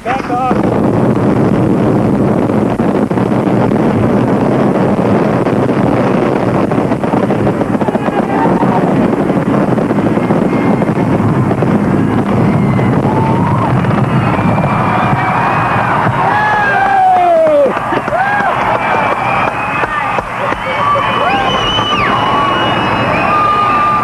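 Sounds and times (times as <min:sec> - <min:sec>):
fireworks bursting: 0:00.0 - 0:24.0
people whooping and whistling: 0:12.2 - 0:24.0.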